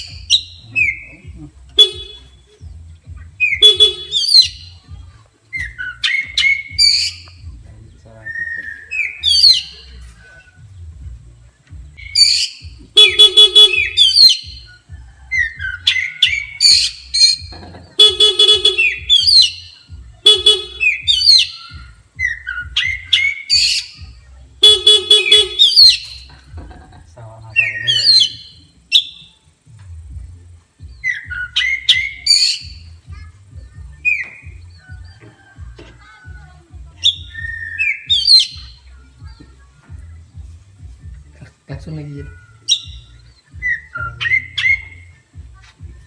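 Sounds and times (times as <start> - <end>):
bird singing whistled phrases: 0.0 - 10.8, 11.9 - 26.5, 27.5 - 29.5, 30.8 - 35.6, 37.0 - 39.3, 41.8 - 45.4
buzzing horn: 1.7 - 2.5, 3.5 - 4.6, 12.9 - 14.2, 18.0 - 19.6, 20.2 - 21.3, 24.6 - 26.2.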